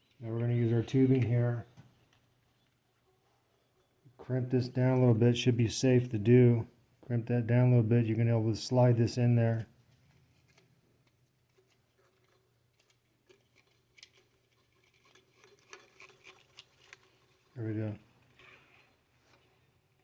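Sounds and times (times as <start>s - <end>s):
faint clicks and rustles: 0.0s - 5.1s, 9.6s - 20.0s.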